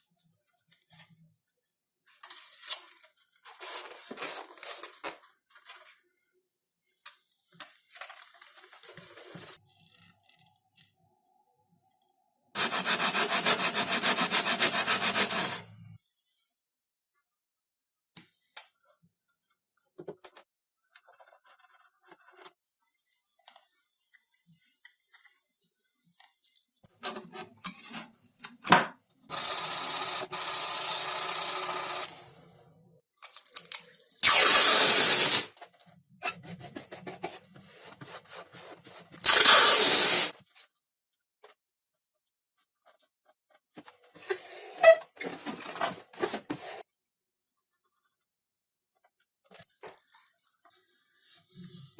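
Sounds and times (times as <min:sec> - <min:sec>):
scratchy rubbing: 0:12.6 - 0:15.7, 0:36.2 - 0:40.3
scrapes and rubs on foam: 0:12.6 - 0:15.8, 0:36.2 - 0:40.3.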